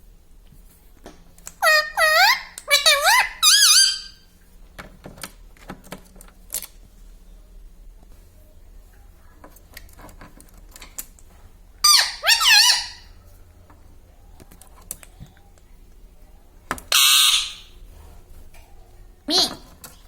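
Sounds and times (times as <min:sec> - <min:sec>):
parakeet harsh screech: 0:01.6 - 0:04.2, 0:11.8 - 0:13.1, 0:16.9 - 0:17.8
parakeet warbling chirps: 0:01.6 - 0:04.2, 0:11.8 - 0:13.1, 0:16.9 - 0:17.7.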